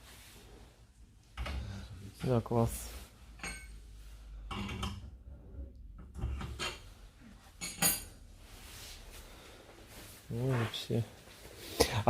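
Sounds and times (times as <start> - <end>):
objects clattering and rubbing: 6.0 - 11.8.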